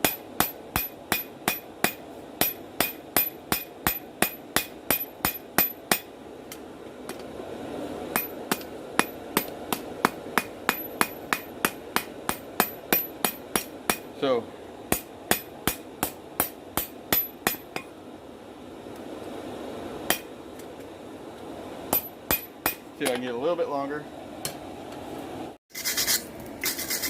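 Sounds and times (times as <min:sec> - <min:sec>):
hammer ringing on anvil: 0:10.4 - 0:14.1.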